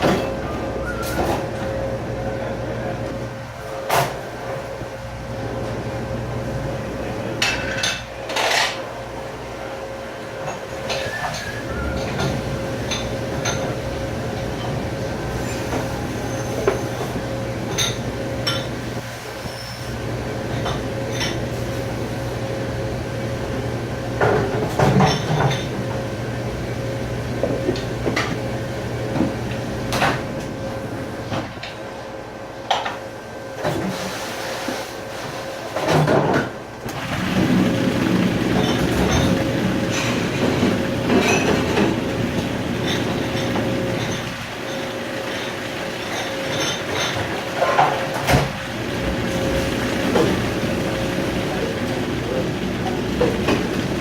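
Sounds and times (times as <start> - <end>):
dishwashing machine droning: 0.0 - 54.0
dishes and racks clattering: 7.4 - 8.9, 10.4 - 18.8, 24.2 - 25.9, 33.6 - 54.0.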